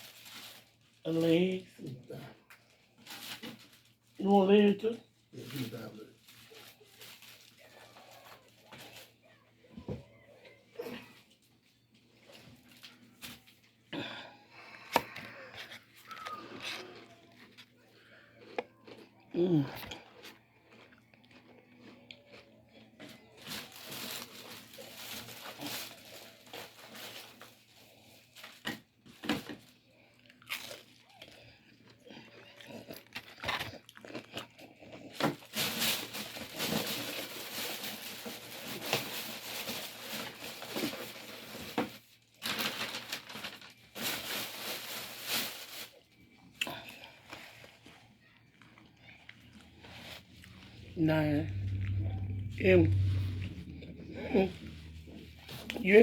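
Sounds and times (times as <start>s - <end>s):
chewing: 14.8s - 23.4s, 30.0s - 35.3s, 46.4s - 52.5s
crunching fried chicken: 15.3s - 56.0s.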